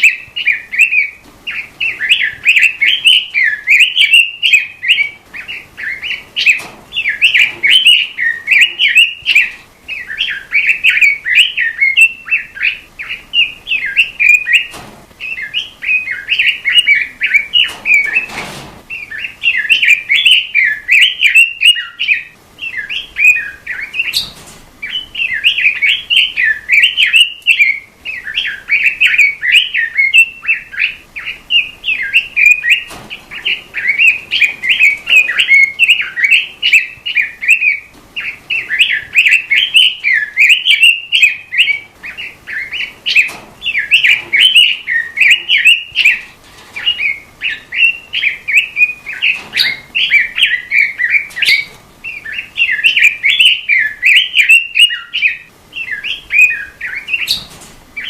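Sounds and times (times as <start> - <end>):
bird warbling song: 0.0 - 58.0.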